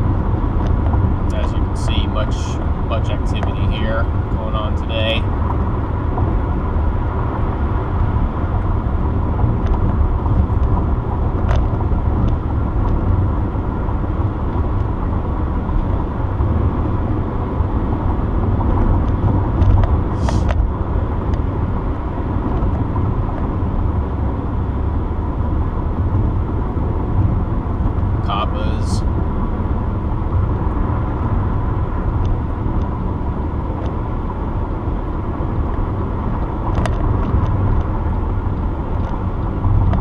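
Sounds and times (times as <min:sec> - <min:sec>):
car road and engine noise: 0:00.0 - 0:40.0.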